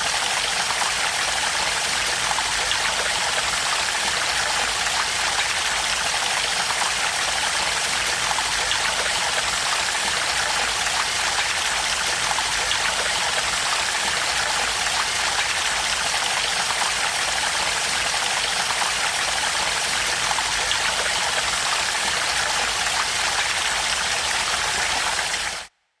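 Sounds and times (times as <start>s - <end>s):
running splashing water: 0.0s - 25.7s.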